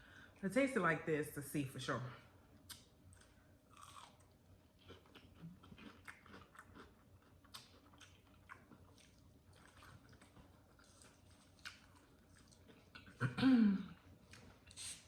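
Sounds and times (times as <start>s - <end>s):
close-up chewing: 3.1s - 13.2s.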